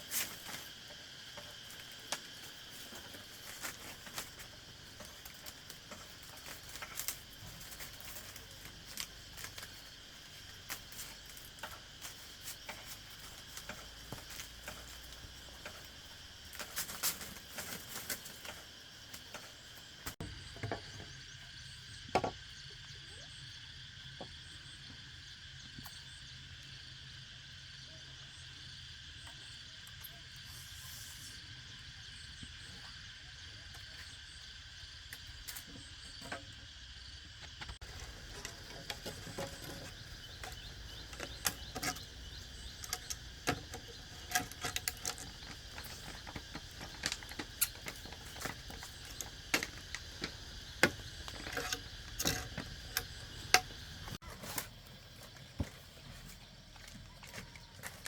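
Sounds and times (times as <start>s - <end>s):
insect chorus chirring: 0.0s - 58.0s.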